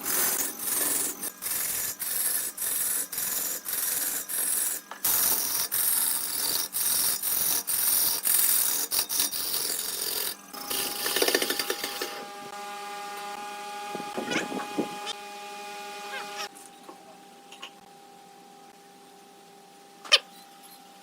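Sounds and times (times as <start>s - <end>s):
tool scraping wood on lathe: 0.0s - 12.4s
machine hum with whine: 10.4s - 21.0s.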